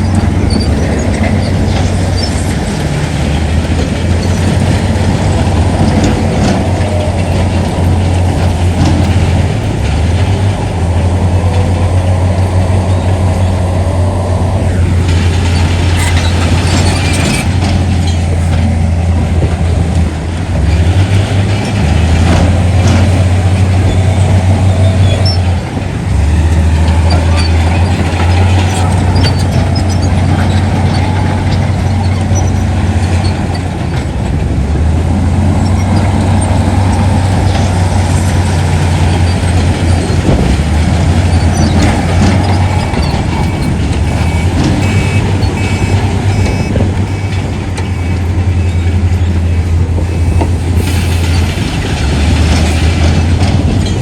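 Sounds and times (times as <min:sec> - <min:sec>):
heavy diesel machinery drone: 0:00.0 - 0:54.0
hiss and clatter: 0:50.3 - 0:54.0.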